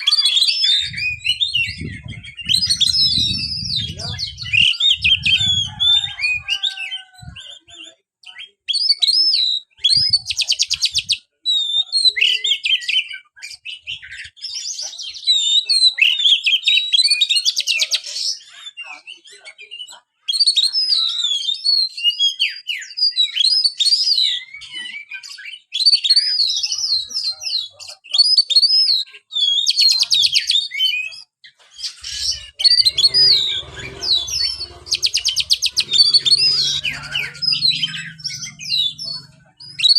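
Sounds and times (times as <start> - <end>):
bird singing whistled notes: 0.0 - 7.6
buzzy bird trills: 31.9 - 39.9.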